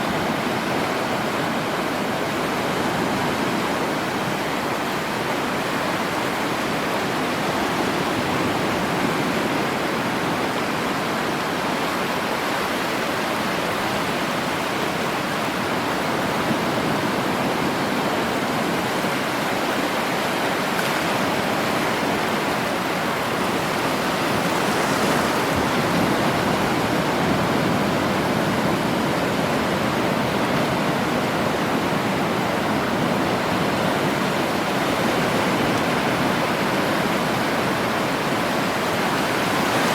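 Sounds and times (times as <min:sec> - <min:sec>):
sea waves rushing: 0:00.0 - 0:39.9.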